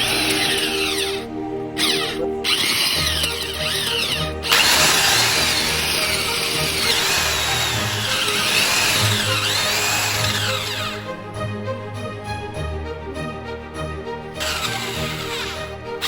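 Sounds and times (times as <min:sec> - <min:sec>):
earth auger boring into ground: 0:00.0 - 0:11.1, 0:14.4 - 0:15.8
background music: 0:00.0 - 0:16.0.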